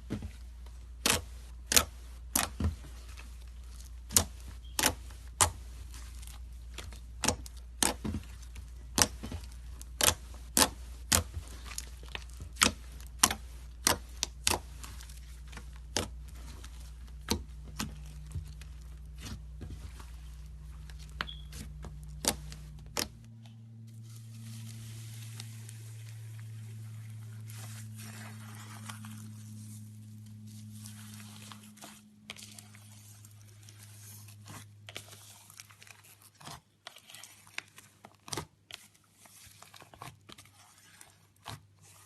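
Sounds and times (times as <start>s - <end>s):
low hum: 15.0s - 33.9s.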